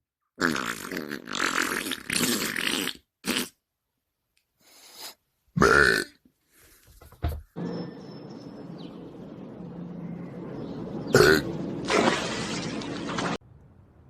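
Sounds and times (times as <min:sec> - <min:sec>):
loud burps: 0:00.4 - 0:03.6, 0:05.6 - 0:06.2, 0:11.1 - 0:11.5.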